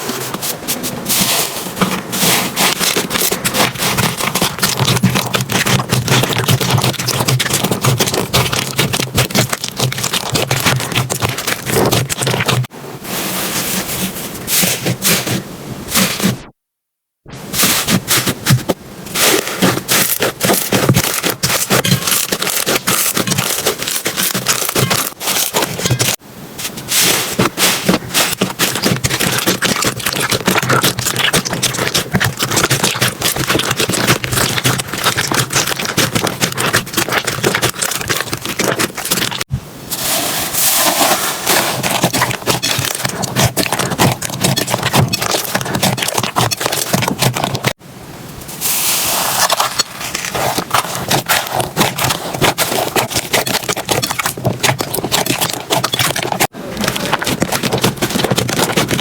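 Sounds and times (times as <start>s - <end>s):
slime crackling and popping: 1.8s - 12.7s, 19.2s - 26.2s, 26.9s - 39.5s, 41.5s - 47.8s, 49.2s - 59.0s.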